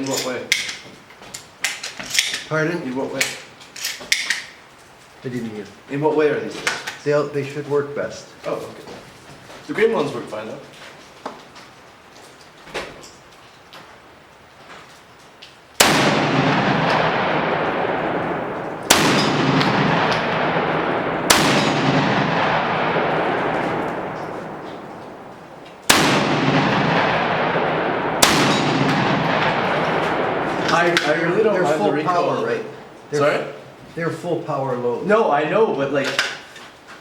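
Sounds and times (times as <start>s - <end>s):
faint gun handling clicks: 3.2s - 4.6s
shotgun firing: 15.8s - 31.7s.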